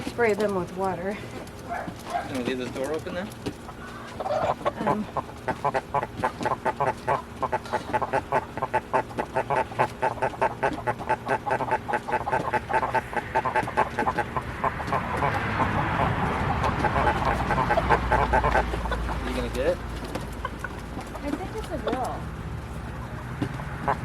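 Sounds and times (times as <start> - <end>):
chickens clucking: 0.0 - 24.0
ducks quacking: 1.7 - 24.0
steady rushing noise: 10.2 - 21.6.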